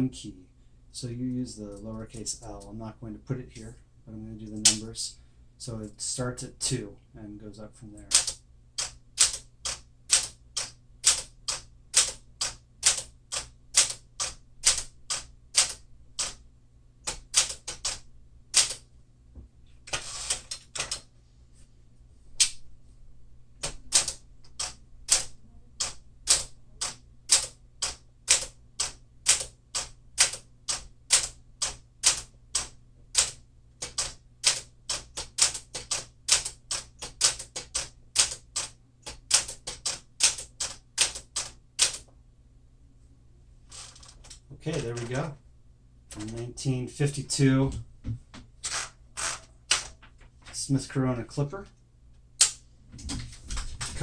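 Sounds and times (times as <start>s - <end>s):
typewriter keystroke clacks: 8.1s - 16.4s, 17.0s - 18.8s, 23.6s - 42.1s
typewriter rasping sound: 8.1s - 16.4s, 17.1s - 18.0s, 18.6s - 18.8s, 19.9s - 21.0s, 23.6s - 42.0s, 48.6s - 50.0s.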